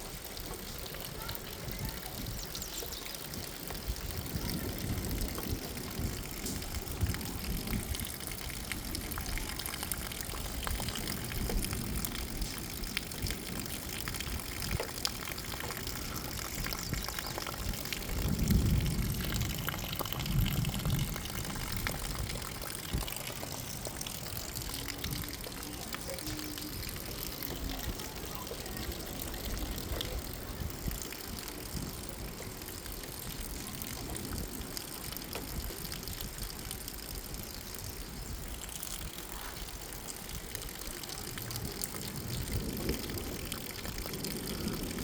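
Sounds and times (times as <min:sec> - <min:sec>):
rain and wind hissing: 0:00.0 - 0:45.0
thunder rumbles: 0:03.2 - 0:36.4, 0:41.6 - 0:45.0.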